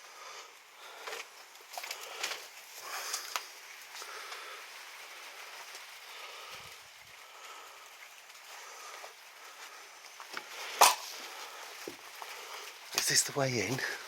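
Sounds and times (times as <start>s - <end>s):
faint outdoor hiss: 0.0s - 14.0s
sharp crack: 10.4s - 11.5s.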